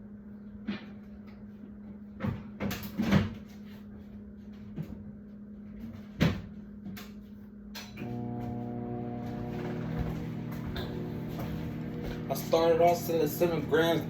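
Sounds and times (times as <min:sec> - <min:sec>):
steady low hum: 0:07.5 - 0:14.0.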